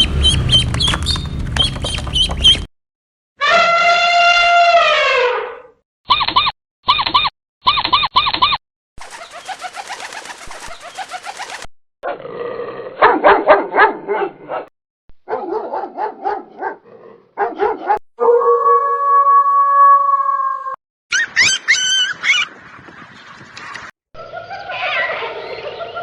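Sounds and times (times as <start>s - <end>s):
bird calls: 0.0s - 2.7s, 9.0s - 11.4s, 21.1s - 26.0s
dog barking: 13.0s - 14.7s, 15.3s - 18.3s.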